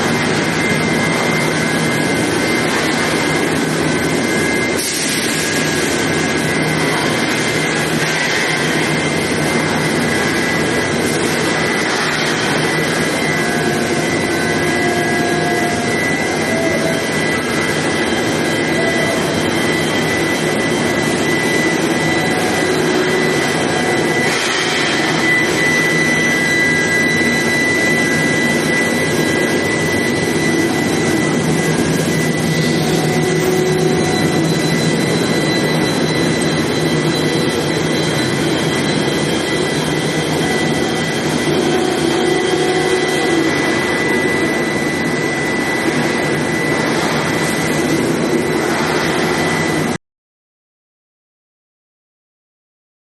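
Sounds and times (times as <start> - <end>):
high steady whine: 0.0 - 50.0
loud machine noise: 0.0 - 50.0
hiss: 4.8 - 5.5.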